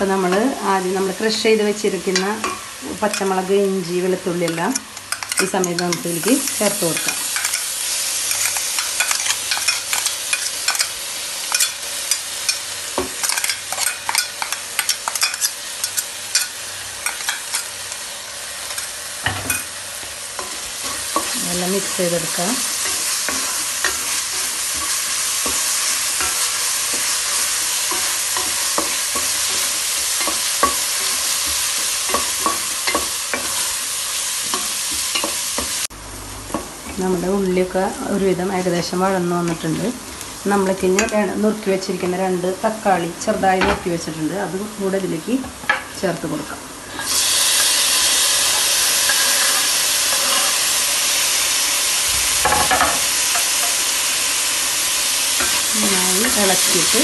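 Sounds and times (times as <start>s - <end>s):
onions sizzling in hot oil: 0.0s - 57.0s
spoon scraping against pan: 4.4s - 35.8s, 48.4s - 50.8s.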